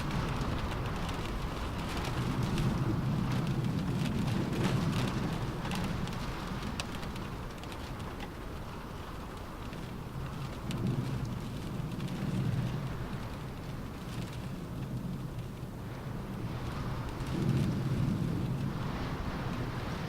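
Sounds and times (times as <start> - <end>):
rain on a car roof: 0.0 - 20.0
low rumble: 9.8 - 20.0.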